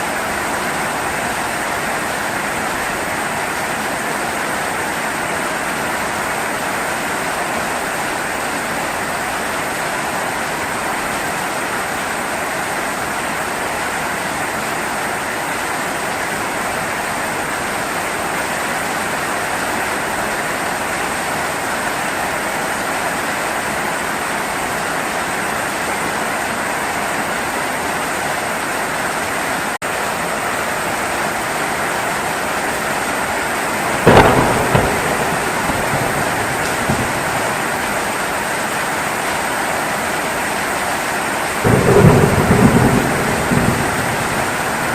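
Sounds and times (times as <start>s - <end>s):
heavy rain: 0.0s - 44.9s
thunder crack: 33.9s - 38.6s, 41.6s - 44.9s.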